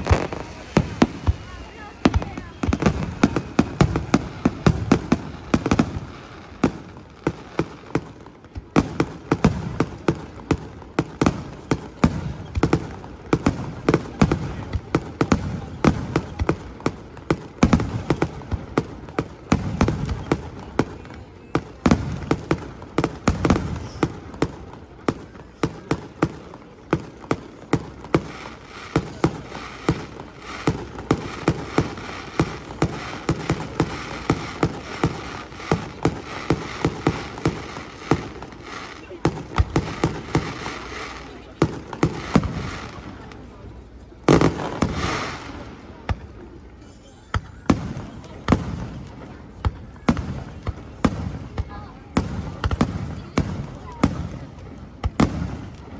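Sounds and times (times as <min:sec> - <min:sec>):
fireworks bursting: 0:00.0 - 0:46.8, 0:47.4 - 0:55.9.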